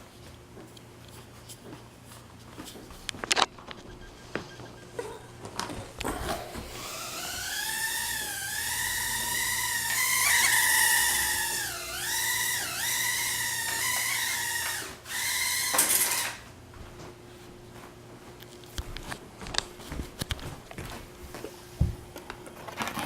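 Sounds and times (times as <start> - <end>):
quadcopter motors whining: 3.3 - 16.4.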